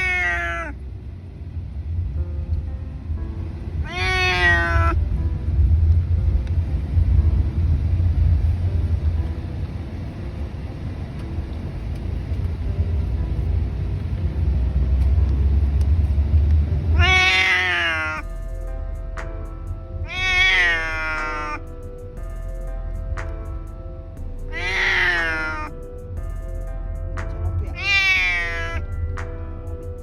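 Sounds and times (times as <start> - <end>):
cat meowing: 0.0 - 0.8, 3.8 - 5.0, 16.9 - 18.2, 20.0 - 21.6, 24.4 - 25.8, 27.6 - 28.9
low rumble: 0.0 - 30.0.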